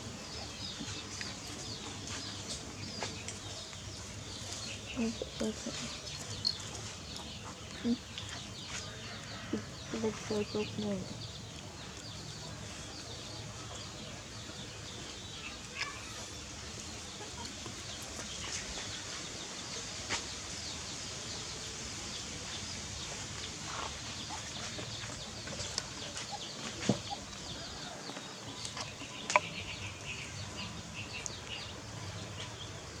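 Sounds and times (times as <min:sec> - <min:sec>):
small birds chirping: 0:00.0 - 0:33.0.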